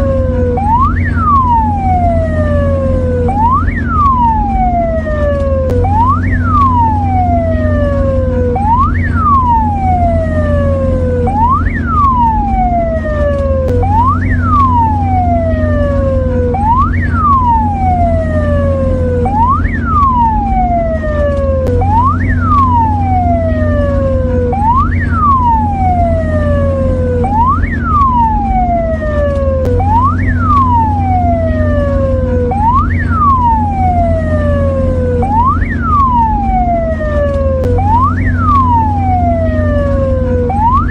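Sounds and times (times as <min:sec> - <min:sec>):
ambulance siren wailing: 0:00.0 - 0:40.9
steady low hum: 0:00.0 - 0:40.9.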